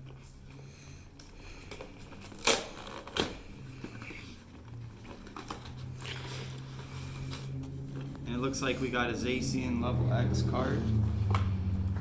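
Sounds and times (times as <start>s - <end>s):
packaging crinkling and rustling: 1.1s - 8.4s.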